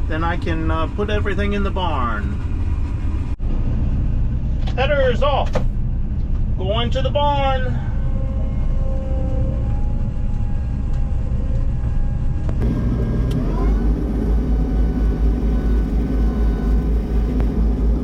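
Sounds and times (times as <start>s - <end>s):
combine harvester engine: 0.0s - 18.0s.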